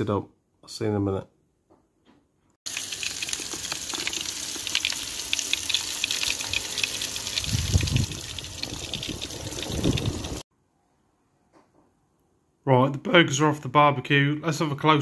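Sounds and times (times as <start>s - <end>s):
burgers sizzling on a barbecue: 2.7s - 10.4s.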